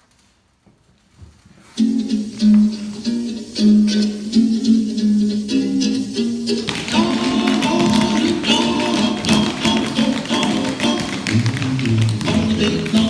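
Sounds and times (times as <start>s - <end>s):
loud recorded music: 1.8s - 13.0s
tap shoes on wooden floor: 6.7s - 13.0s.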